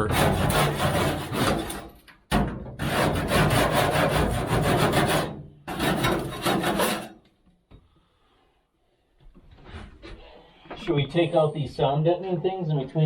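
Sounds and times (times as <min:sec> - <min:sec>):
hand scraper scraping insulation: 0:00.0 - 0:07.3.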